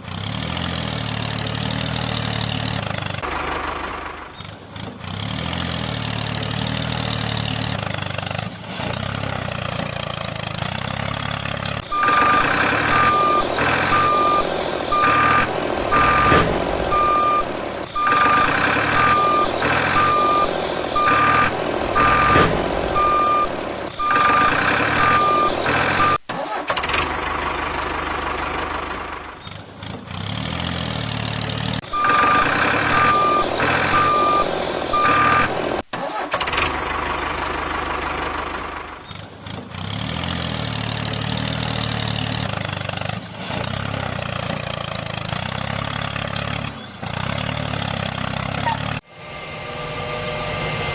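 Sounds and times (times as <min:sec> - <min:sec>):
truck engine running: 0:00.0 - 0:50.9
reversing beeper: 0:11.8 - 0:26.3, 0:31.8 - 0:35.8.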